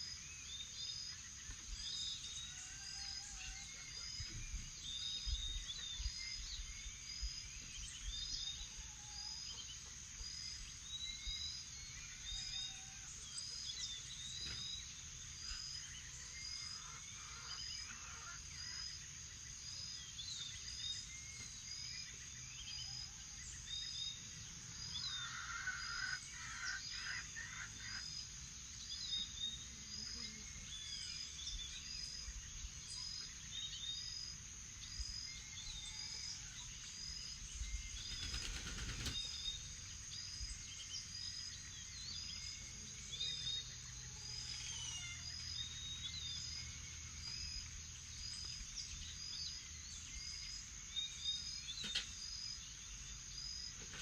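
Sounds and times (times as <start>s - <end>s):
high insect drone: 0.0s - 54.0s
birds calling: 37.6s - 41.1s.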